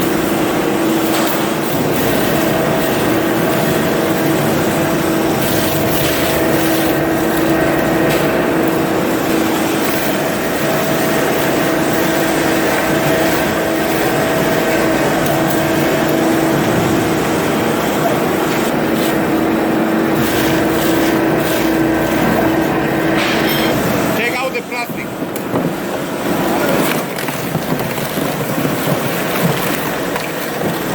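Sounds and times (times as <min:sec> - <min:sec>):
motor and gearbox whine: 0:00.0 - 0:30.9
dense grinding noise: 0:01.1 - 0:30.9
wood cracking: 0:25.2 - 0:30.9.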